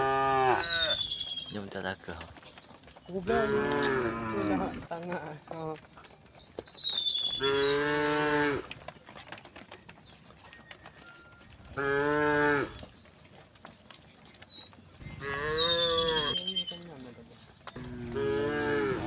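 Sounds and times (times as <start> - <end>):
cows mooing: 0.0 - 1.1, 3.1 - 5.1, 7.4 - 8.8, 11.1 - 12.9, 15.0 - 16.8, 17.8 - 19.0.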